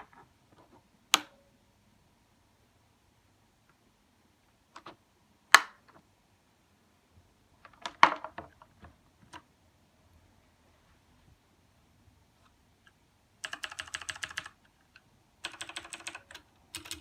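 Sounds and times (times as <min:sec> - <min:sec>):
keyboard keys clicking: 0:13.4 - 0:14.6, 0:15.4 - 0:17.0.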